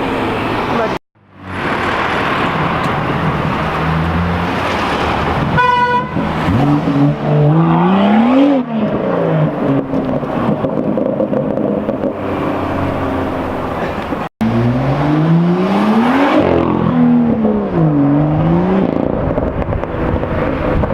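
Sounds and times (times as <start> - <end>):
car engine: 0.0 - 20.9
road noise: 0.0 - 20.9
car horn toot: 5.5 - 6.3.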